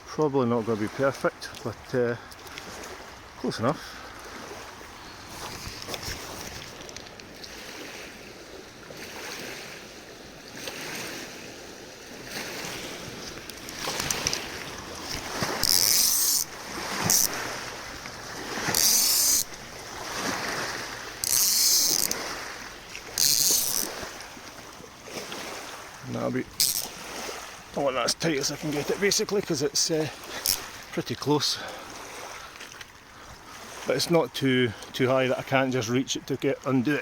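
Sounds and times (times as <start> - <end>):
cord zipping through ratchet pulley: 15.1 - 17.4, 18.6 - 19.5, 21.2 - 22.2, 23.1 - 24.0, 26.6 - 26.9.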